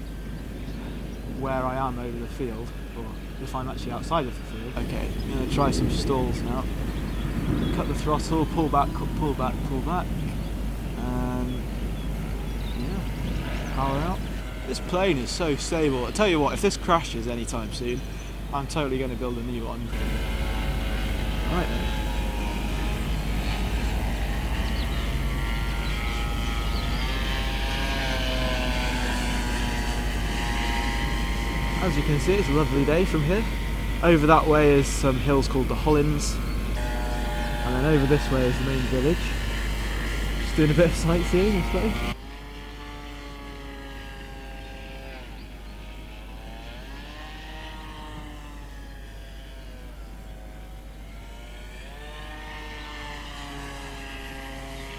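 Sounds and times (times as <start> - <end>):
wind noise: 0.0 - 42.2
electric motor whine: 0.0 - 54.9.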